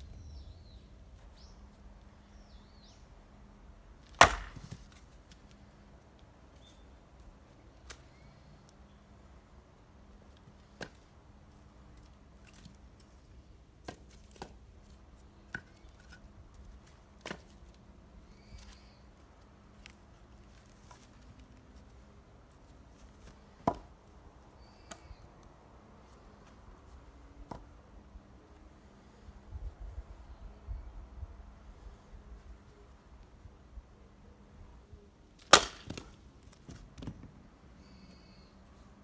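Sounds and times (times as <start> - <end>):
axe chopping firewood: 4.0 - 5.0, 23.6 - 23.9, 35.4 - 36.2.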